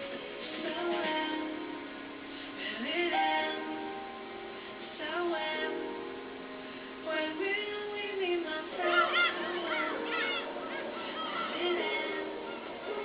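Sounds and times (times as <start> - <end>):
high chirping calls: 8.8 - 13.0.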